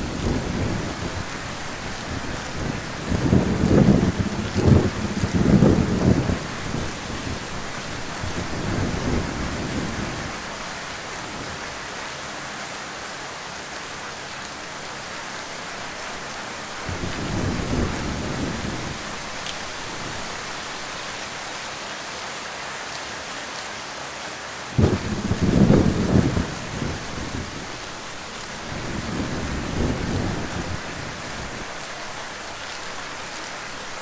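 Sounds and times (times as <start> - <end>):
thunder rumbling: 0.0 - 10.5, 16.8 - 20.4, 24.8 - 31.8
heavy rain falling: 0.0 - 34.0.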